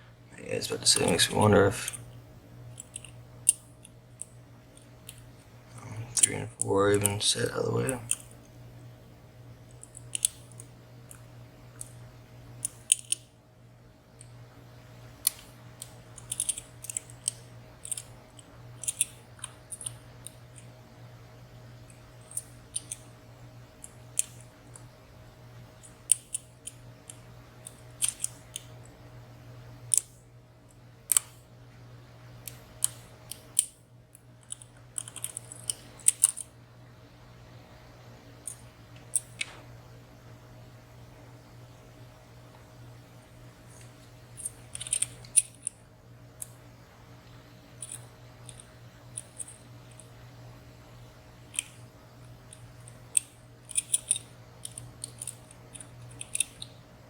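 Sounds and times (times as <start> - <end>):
steady low hum: 0.0 - 57.0
lock picks clicking and scraping: 2.7 - 5.3, 9.7 - 11.2, 12.6 - 13.3, 15.2 - 20.7, 21.9 - 23.1, 25.8 - 28.7, 32.4 - 36.5, 38.4 - 39.5, 43.7 - 45.8, 47.8 - 50.1, 51.4 - 56.8.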